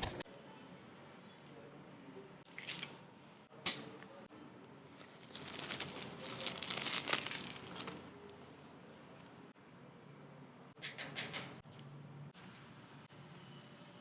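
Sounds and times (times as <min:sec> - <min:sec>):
packaging crinkling and rustling: 0:05.0 - 0:08.1.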